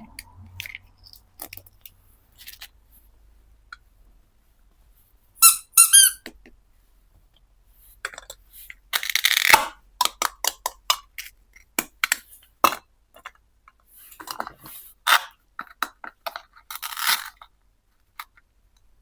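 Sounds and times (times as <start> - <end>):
plastic toy squeaks: 5.4 - 6.3, 8.9 - 9.7, 16.7 - 17.4.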